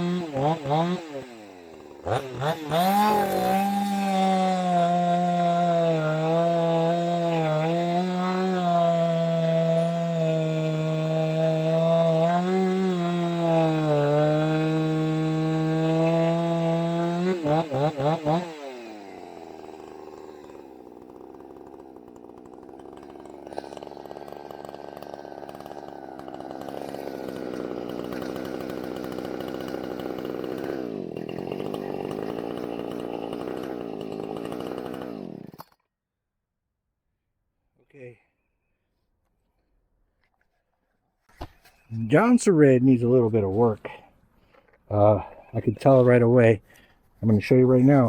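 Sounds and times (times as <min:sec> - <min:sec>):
chainsaw running: 0:00.0 - 0:35.8.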